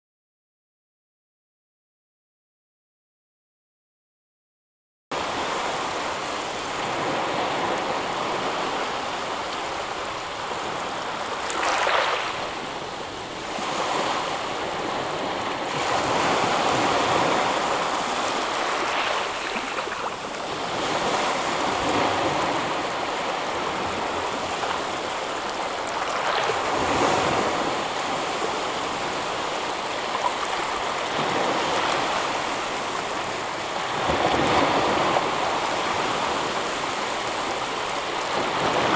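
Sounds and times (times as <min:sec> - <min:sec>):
ocean waves breaking on shore: 0:05.1 - 0:38.9.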